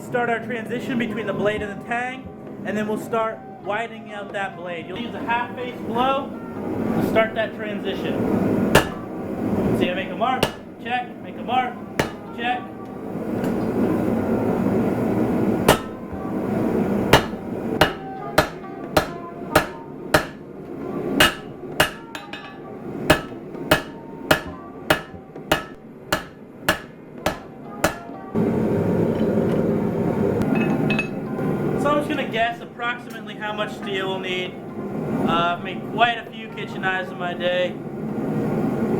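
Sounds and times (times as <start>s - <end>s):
hammer striking steel on anvil: 8.7s - 9.2s, 9.8s - 10.8s, 12.0s - 12.4s, 15.6s - 16.2s, 17.0s - 20.5s, 21.1s - 28.1s, 30.4s - 31.3s.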